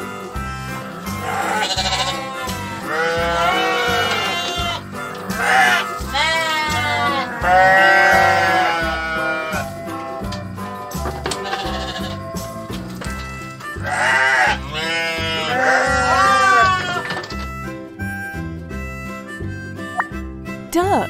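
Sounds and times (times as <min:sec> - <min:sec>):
music with steady beat: 0:00.0 - 0:14.0, 0:17.6 - 0:21.0
goats bleating: 0:01.0 - 0:10.3, 0:11.3 - 0:12.4, 0:13.8 - 0:17.2.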